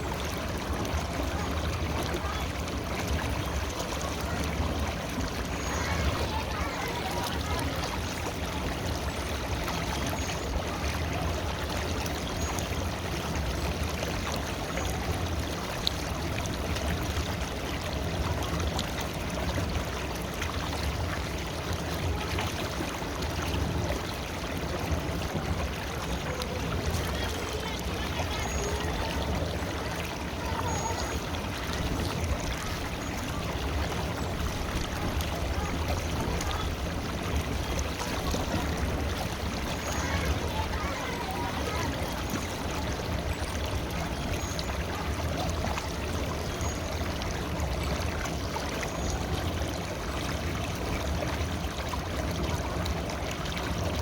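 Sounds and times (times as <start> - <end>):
river water flowing over stones: 0.0 - 54.0.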